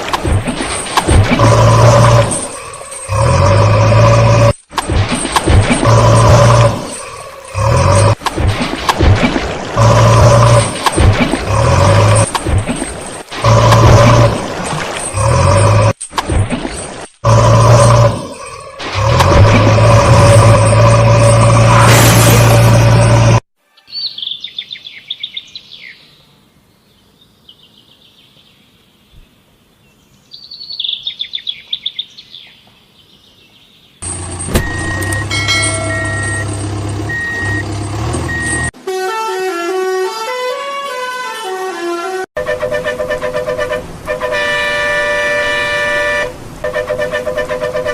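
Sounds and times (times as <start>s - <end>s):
low engine hum: 34.0s - 38.7s
long horn blasts: 38.8s - 47.9s
vehicle horn honks: 38.8s - 47.9s.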